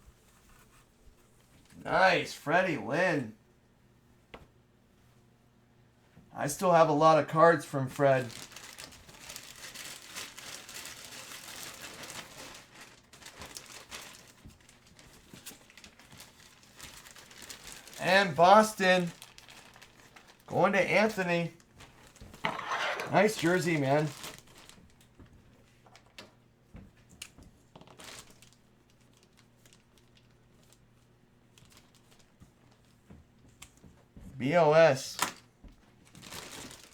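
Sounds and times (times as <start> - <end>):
cards in plastic sleeves rustling: 7.9 - 25.0
plastic and foil wrapping crinkling: 8.0 - 26.4, 27.1 - 33.9, 35.1 - 36.9.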